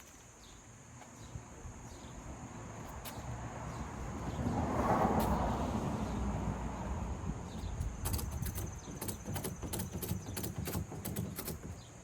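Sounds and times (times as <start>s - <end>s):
ratchet strap clicks: 8.0s - 11.8s.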